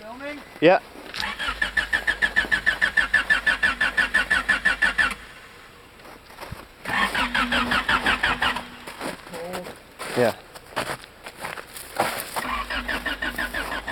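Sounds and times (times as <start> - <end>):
starter cranking car engine: 1.1 - 5.5, 6.8 - 9.1, 12.4 - 13.9.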